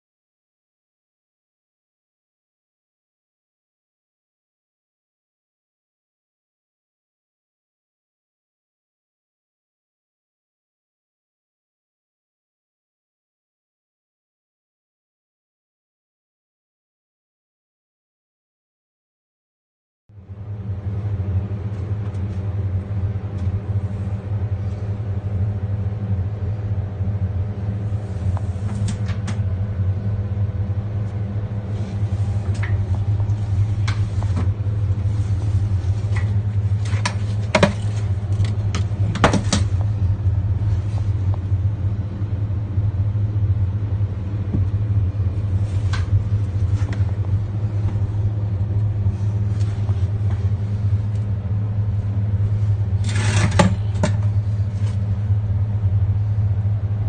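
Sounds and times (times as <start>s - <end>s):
van engine droning: 20.2s - 57.0s
sharp clicks and knocks: 36.1s - 39.9s.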